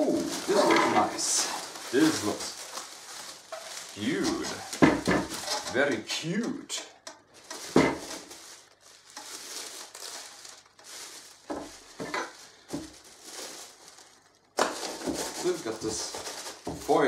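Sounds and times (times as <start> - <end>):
plastic film crinkling and rustling: 0.0 - 17.0.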